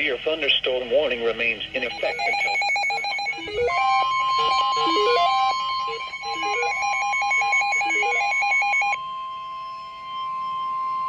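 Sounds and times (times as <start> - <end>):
weather radio alert tone: 0.0 - 9.0
fast beeping electronic melody: 1.8 - 9.0.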